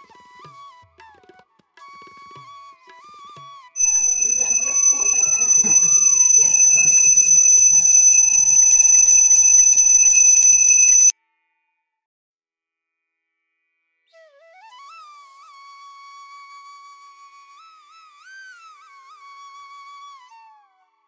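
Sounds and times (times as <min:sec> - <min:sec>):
high-pitched bell ringing: 0:03.8 - 0:11.1.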